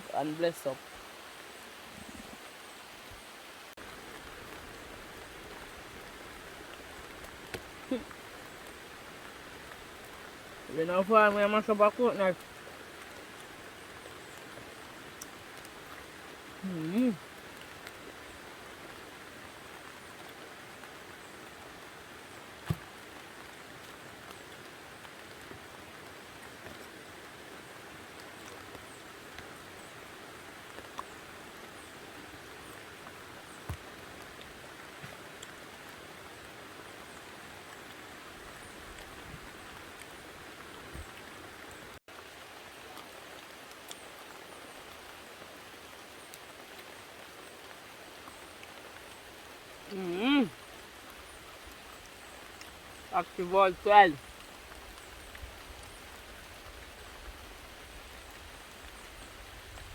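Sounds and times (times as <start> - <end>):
steady rain falling: 0.0 - 59.9
raindrop ticks: 4.0 - 19.0, 30.6 - 31.2, 46.2 - 59.9.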